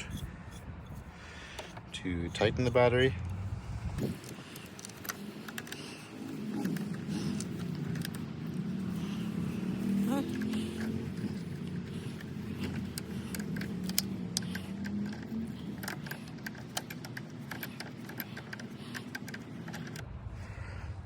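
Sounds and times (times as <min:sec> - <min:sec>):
wrench clicking on metal nut: 0:04.0 - 0:20.0.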